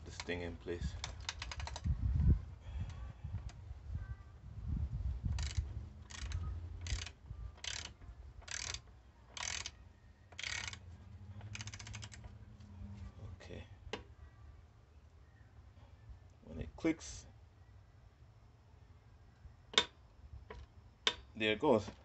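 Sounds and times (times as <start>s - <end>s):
quick fine ratchet clicks: 0.0s - 1.9s, 5.2s - 10.8s, 11.4s - 12.2s
ratcheting wrench strokes: 1.0s - 1.9s, 5.3s - 10.8s, 11.4s - 12.2s.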